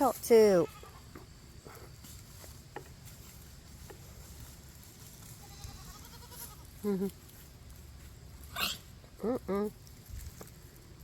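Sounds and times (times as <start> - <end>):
goat bleating: 5.3 - 7.2.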